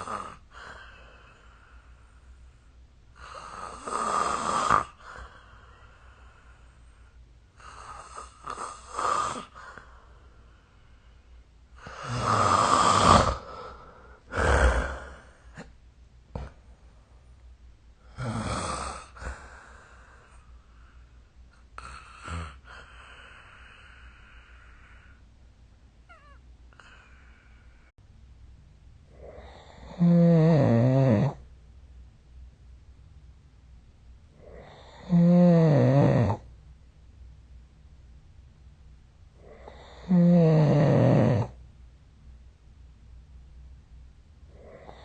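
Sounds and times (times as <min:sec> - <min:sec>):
person snoring: 0:00.0 - 0:02.1, 0:03.2 - 0:06.8, 0:07.6 - 0:10.0, 0:11.8 - 0:15.7, 0:18.0 - 0:20.5, 0:21.8 - 0:25.2, 0:26.1 - 0:27.9, 0:29.1 - 0:31.4, 0:34.4 - 0:36.5, 0:39.4 - 0:41.6.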